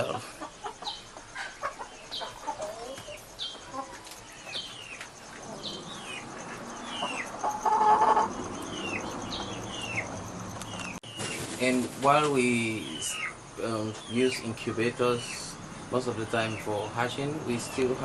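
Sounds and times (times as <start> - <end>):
chicks peeping: 0.0 - 18.0
lower chicken call: 5.4 - 9.1.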